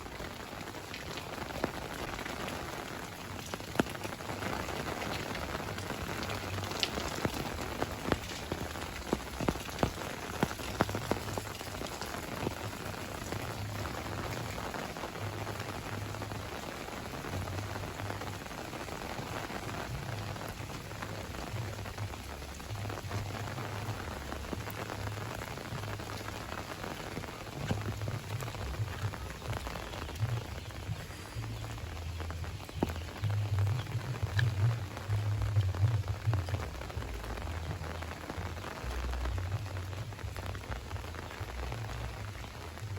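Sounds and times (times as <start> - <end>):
raindrops hitting close by: 0.0 - 42.9
steady rain falling: 0.0 - 42.9.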